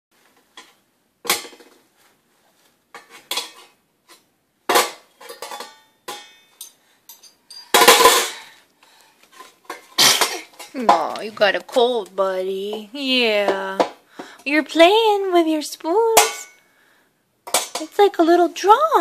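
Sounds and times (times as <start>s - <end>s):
spoons clinking together: 5.3s - 8.4s.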